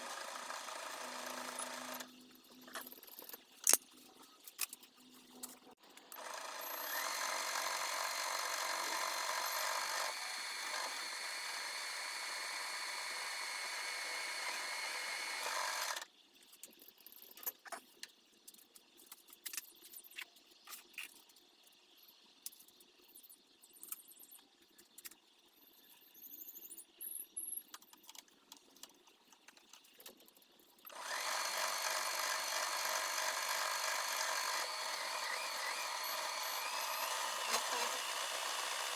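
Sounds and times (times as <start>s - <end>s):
machine tool motor running: 0.0s - 2.2s, 6.1s - 16.0s, 30.9s - 38.9s.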